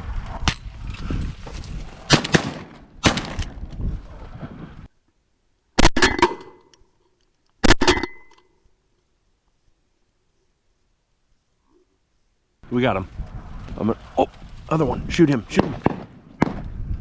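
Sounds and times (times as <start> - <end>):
wind noise: 0.0 - 4.9, 12.6 - 17.0
shotgun blasts: 2.1 - 3.7, 15.5 - 16.7.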